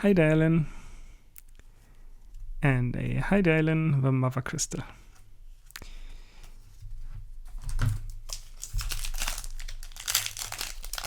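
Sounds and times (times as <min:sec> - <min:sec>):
foil wrapper crinkling: 0:07.8 - 0:11.0.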